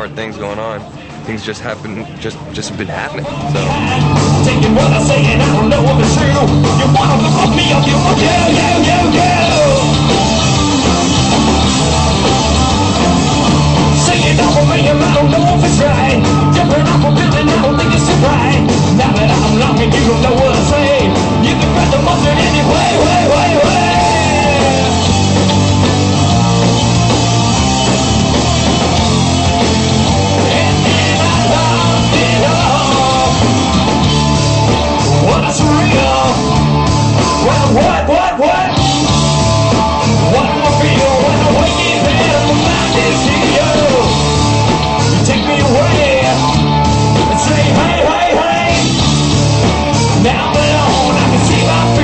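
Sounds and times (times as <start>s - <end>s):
bass guitar: 0.0s - 52.0s
distorted guitars: 0.0s - 52.0s
drums: 0.0s - 52.0s
person singing: 3.2s - 10.2s, 13.9s - 25.2s, 30.3s - 33.9s, 35.2s - 44.3s, 45.0s - 46.5s, 47.2s - 49.0s, 50.0s - 52.0s.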